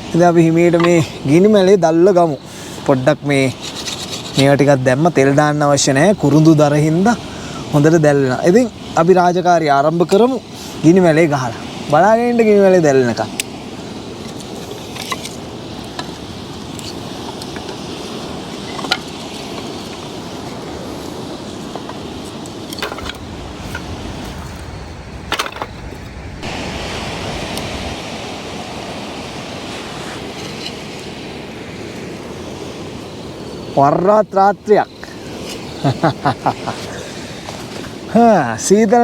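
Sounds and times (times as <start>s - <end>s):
surf: 0.0s - 39.0s
wind: 0.0s - 39.0s
campfire crackling: 13.2s - 33.5s.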